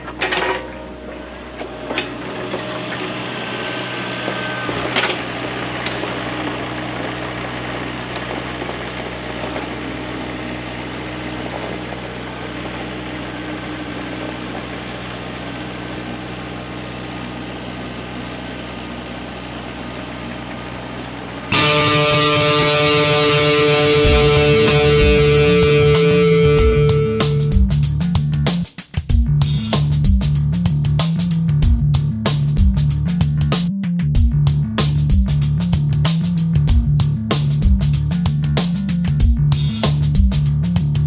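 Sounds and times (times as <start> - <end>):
sharp metal clanks: 0.0 - 2.7
excavator diesel engine running: 0.0 - 28.0.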